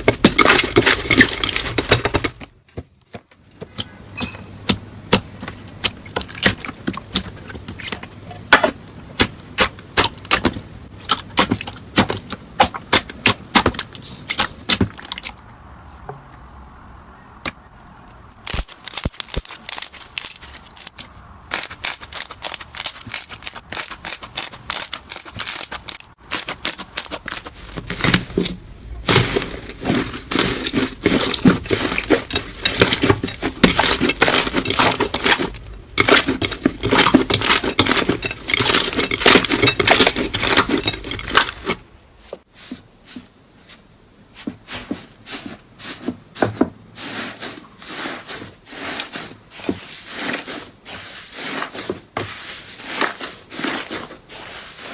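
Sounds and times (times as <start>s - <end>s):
slime crackling and popping: 18.4s - 28.1s.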